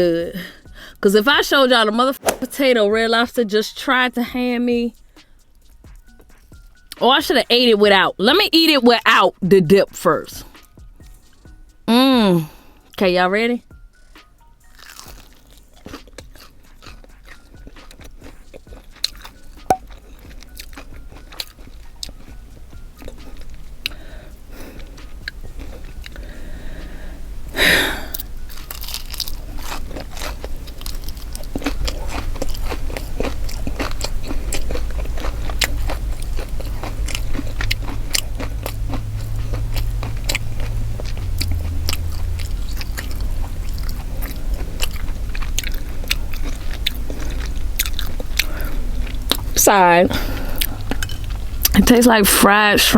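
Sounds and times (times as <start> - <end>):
crunching and chewing: 10.5 - 11.6, 13.8 - 27.2, 28.0 - 52.3.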